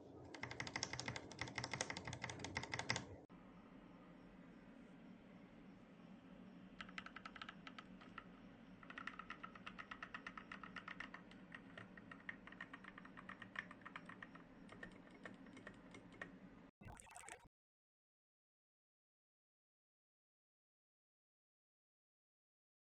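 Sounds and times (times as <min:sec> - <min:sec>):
mechanical keyboard typing: 0:00.3 - 0:03.1, 0:06.8 - 0:16.3.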